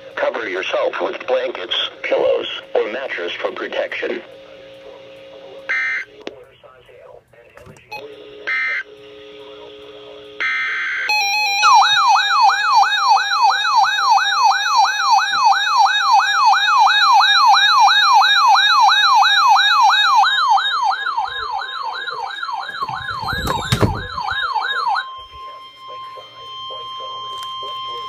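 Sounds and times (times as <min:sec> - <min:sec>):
electronic yelp siren: 0:05.7 - 0:06.1, 0:10.4 - 0:28.0.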